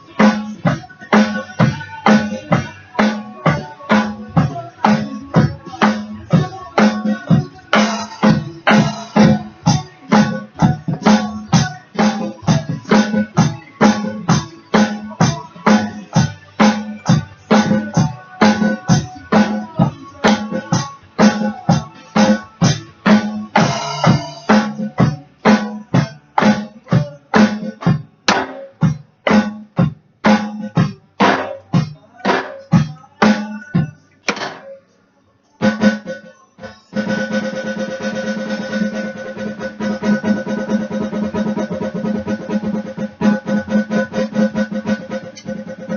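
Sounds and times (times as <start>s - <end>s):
recorded rock song with guitar: 0.0s - 34.6s
drum kit playing steady beat: 0.0s - 34.8s, 35.6s - 45.9s.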